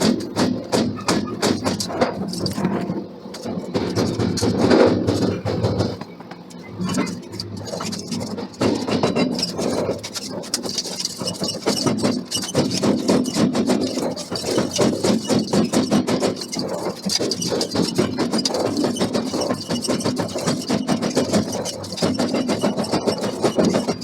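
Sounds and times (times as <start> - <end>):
machinery clattering: 0.0 - 24.0
faint machine squeal: 5.7 - 8.4, 9.0 - 24.0.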